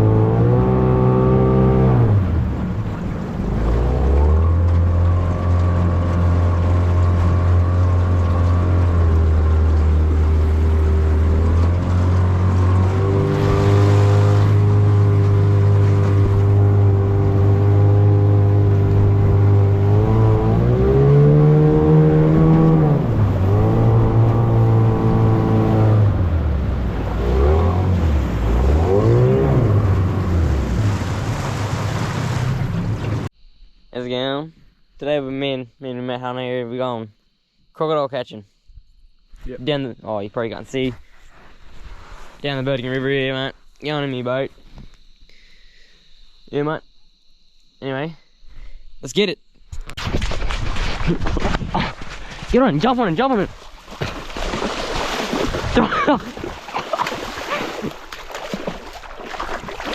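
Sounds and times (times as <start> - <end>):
outboard motor running: 0.0 - 33.3, 51.8 - 59.9.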